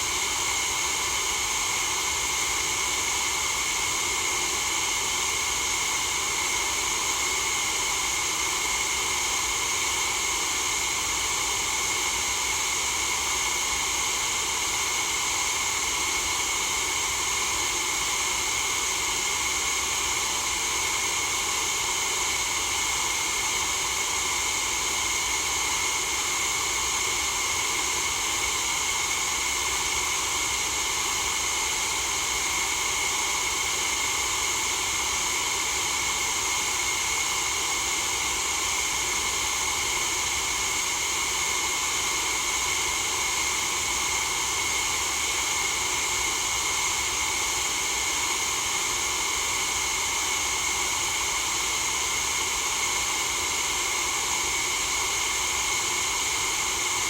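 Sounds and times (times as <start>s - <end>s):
steady white noise hiss: 0.0s - 4.5s.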